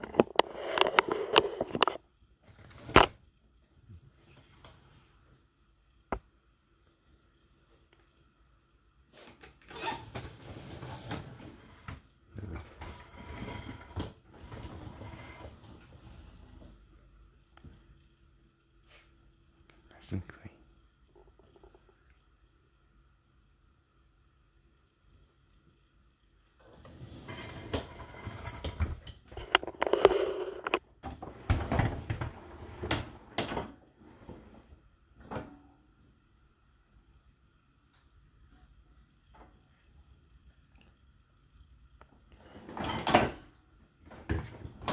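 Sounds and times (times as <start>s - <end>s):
dishwasher rack sliding on rails: 9.8s - 16.7s, 26.6s - 34.7s, 42.4s - 43.4s.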